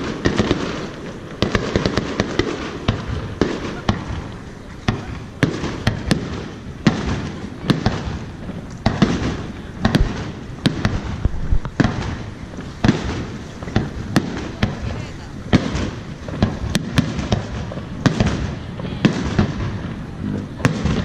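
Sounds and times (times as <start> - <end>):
fireworks bursting with booms: 0.0 - 21.0.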